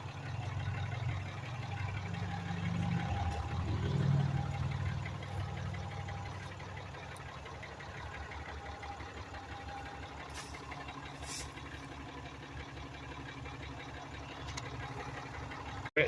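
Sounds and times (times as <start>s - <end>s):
pickup engine idling: 0.0s - 16.0s
short hisses: 11.2s - 11.7s.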